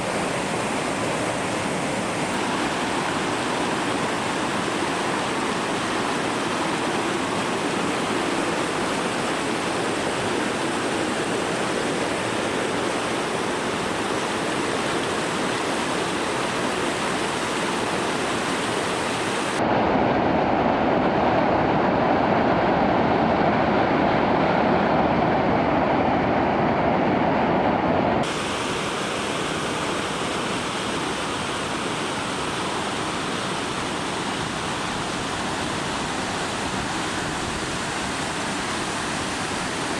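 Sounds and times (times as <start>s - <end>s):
waterfall rushing: 0.0s - 20.0s, 28.2s - 39.9s.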